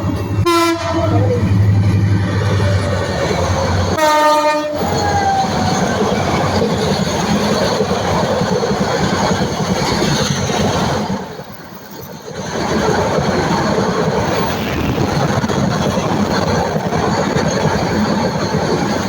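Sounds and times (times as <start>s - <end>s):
train running: 0.0s - 19.0s
train horn: 0.4s - 1.4s, 3.9s - 5.2s.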